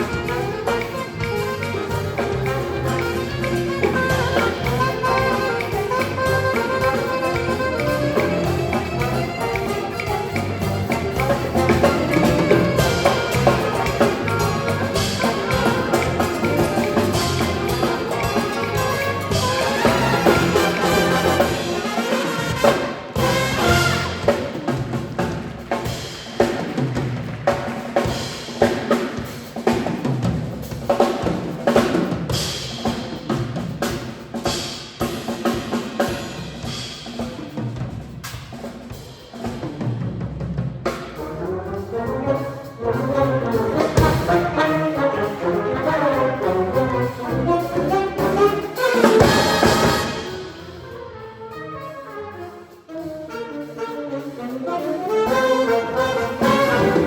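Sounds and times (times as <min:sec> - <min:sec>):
brass and percussion music: 0:00.0 - 0:57.0.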